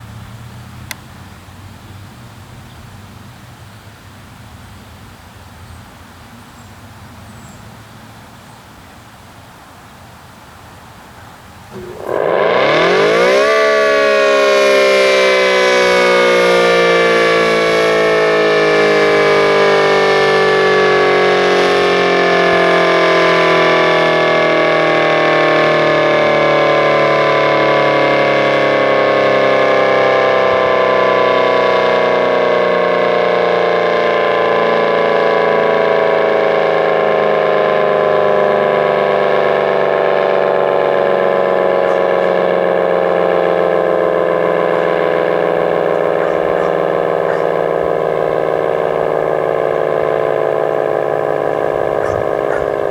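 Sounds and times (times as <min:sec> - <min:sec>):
steady low hum: 0:11.4 - 0:14.8, 0:39.4 - 0:52.9
siren winding down: 0:11.7 - 0:52.9.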